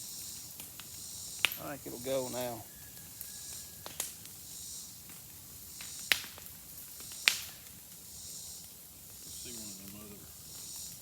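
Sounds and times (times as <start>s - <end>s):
brush pile burning: 0.0s - 11.0s
faint hiss: 0.0s - 11.0s
wood popping and cracking: 3.8s - 4.3s, 5.0s - 8.0s.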